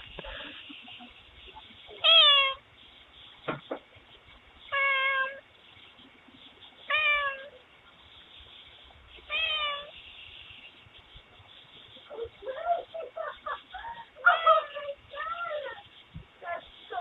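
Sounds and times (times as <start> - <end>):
cat meowing: 2.0 - 2.6, 4.7 - 5.4, 6.9 - 7.6, 9.3 - 9.9.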